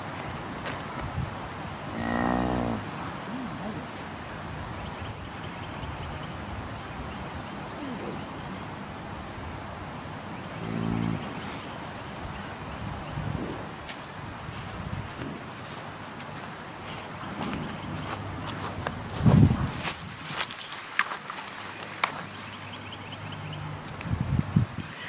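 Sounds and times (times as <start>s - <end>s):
cattle mooing: 1.9s - 2.8s, 10.6s - 11.5s.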